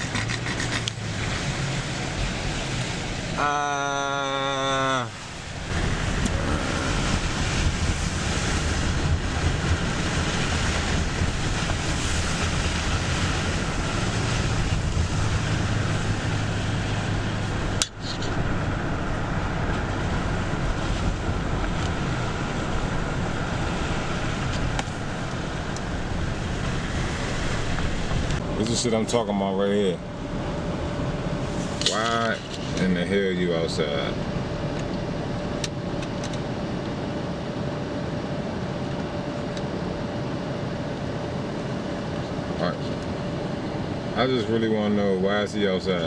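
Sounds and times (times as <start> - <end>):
car engine hum: 0.0 - 46.0
tyre and road noise: 0.0 - 46.0.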